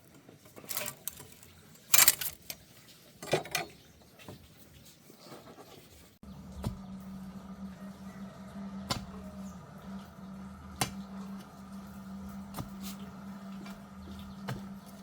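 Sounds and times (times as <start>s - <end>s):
steady low hum: 6.2s - 15.0s.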